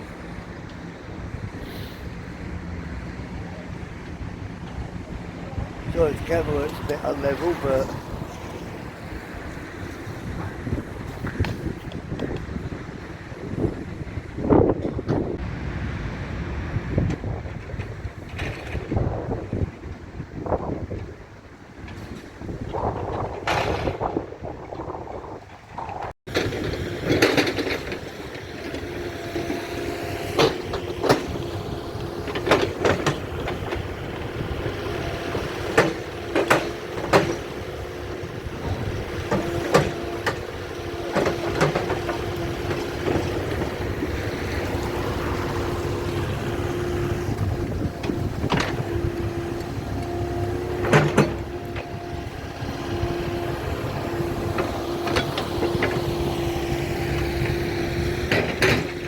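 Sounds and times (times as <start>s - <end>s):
machinery humming: 0.0s - 11.8s, 26.3s - 59.0s.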